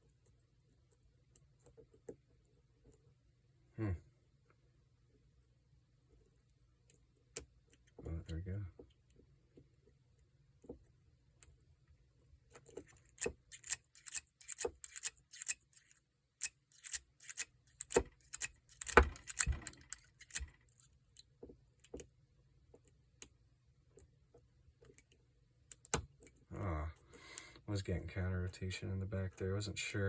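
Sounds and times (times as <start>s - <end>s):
lock pick clicking and scraping: 12.5s - 22.1s.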